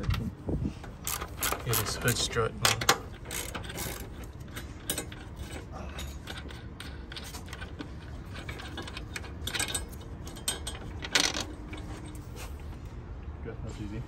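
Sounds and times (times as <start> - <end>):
ratchet wrench clicking: 1.0 - 5.6.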